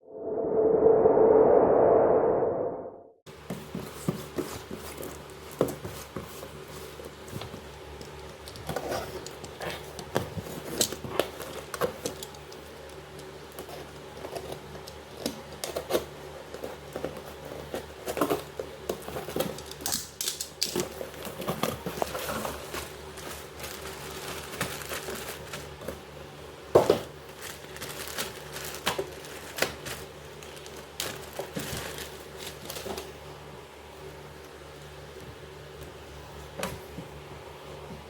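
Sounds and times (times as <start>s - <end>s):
packaging rustling and crinkling: 20.6s - 26.1s, 26.8s - 33.2s.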